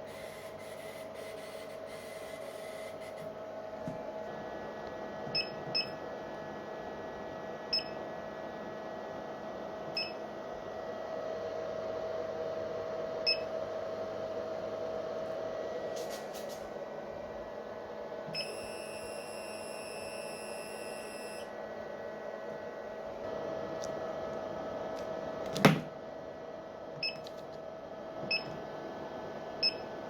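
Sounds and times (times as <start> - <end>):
laser tube humming: 0.0 - 10.3, 16.8 - 25.9.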